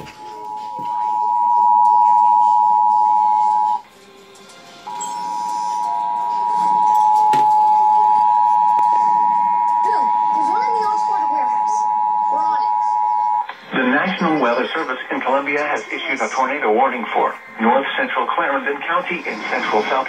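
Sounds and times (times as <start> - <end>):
two-tone alert alarm: 0.2 - 3.8, 4.9 - 13.5.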